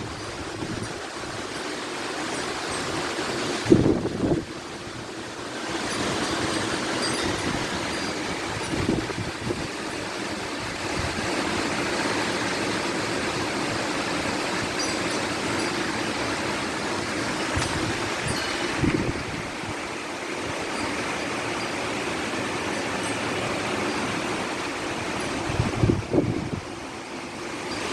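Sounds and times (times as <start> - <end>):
strong gusty wind: 0.0 - 27.9
wind buffeting microphone: 2.4 - 11.9, 14.5 - 20.7, 21.9 - 27.0.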